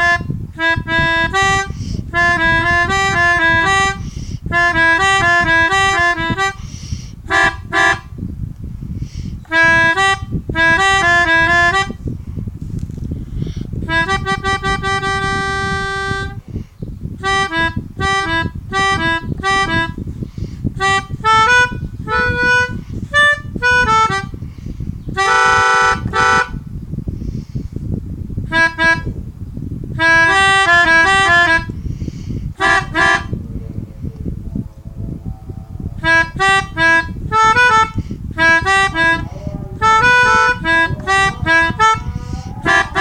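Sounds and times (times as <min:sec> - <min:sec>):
melodica playing horn tunes: 0:00.0 - 0:08.1, 0:09.5 - 0:12.0, 0:13.8 - 0:16.4, 0:17.2 - 0:20.0, 0:20.8 - 0:24.3, 0:25.1 - 0:26.6, 0:28.5 - 0:29.2, 0:30.0 - 0:31.8, 0:32.6 - 0:33.4, 0:36.0 - 0:43.0.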